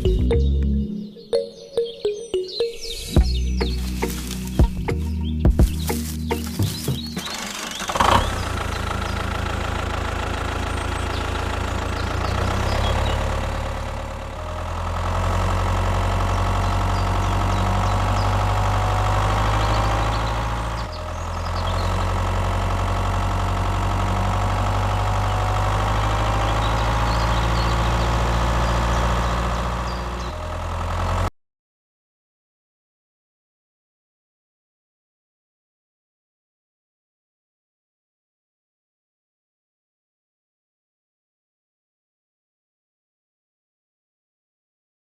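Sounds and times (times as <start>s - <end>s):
engine idling: 3.2s - 31.3s.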